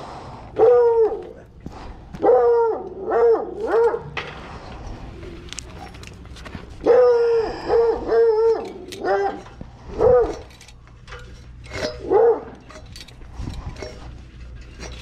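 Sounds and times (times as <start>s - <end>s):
dog barking: 0.6s - 1.2s, 2.2s - 4.1s, 6.8s - 10.5s, 12.0s - 12.6s.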